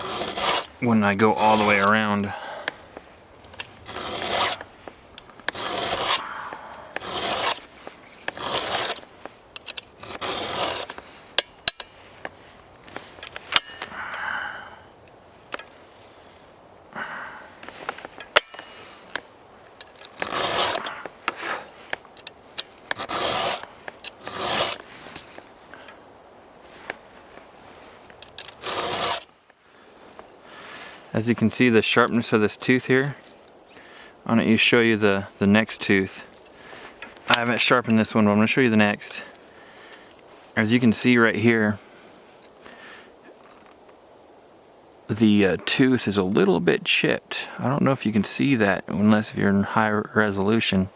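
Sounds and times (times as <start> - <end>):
file rasping on chainsaw chain: 0.0 - 0.8, 1.4 - 1.9, 3.4 - 11.9, 20.2 - 21.6, 22.5 - 25.4, 28.3 - 29.3.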